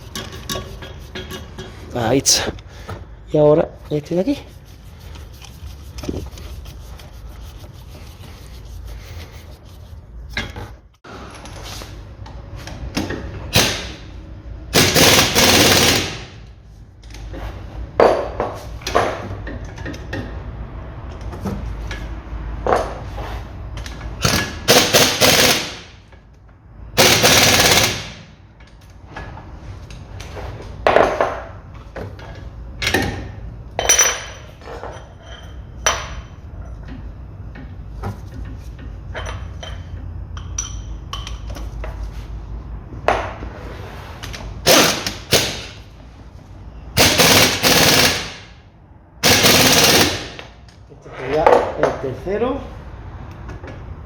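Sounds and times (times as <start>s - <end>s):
wrench rapid clicking: 14.8s - 16.3s, 24.2s - 25.8s, 27.0s - 28.2s, 44.7s - 45.7s, 47.0s - 48.5s, 49.2s - 50.4s.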